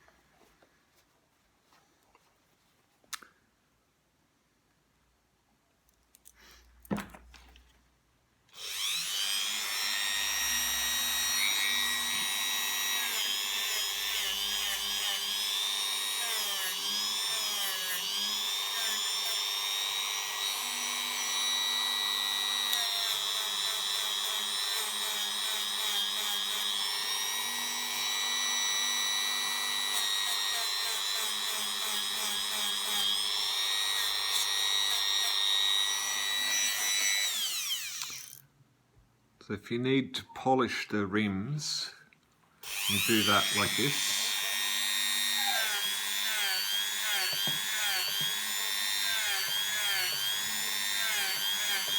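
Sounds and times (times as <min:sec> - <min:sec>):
small electric motor whining: 0:08.6 - 0:38.4, 0:42.6 - 0:51.9.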